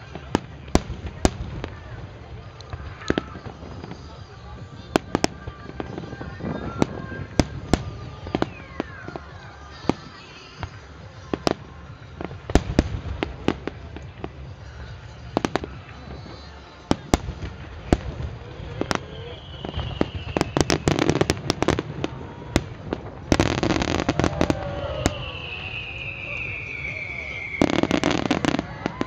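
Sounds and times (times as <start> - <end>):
fireworks bangs: 0.0 - 29.0
falling firework whistle: 18.6 - 22.6, 23.3 - 29.0.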